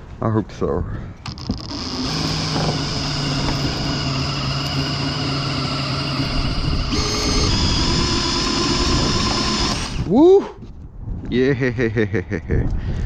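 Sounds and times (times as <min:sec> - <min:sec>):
power drill motor hum: 0:01.2 - 0:10.1.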